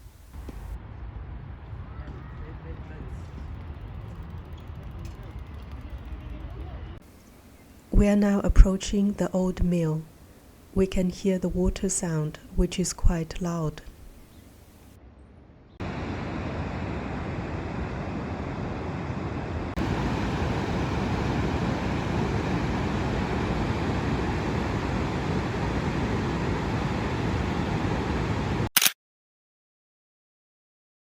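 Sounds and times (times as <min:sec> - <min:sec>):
rushing river water: 0:19.8 - 0:28.6
sharp click: 0:28.8 - 0:29.0.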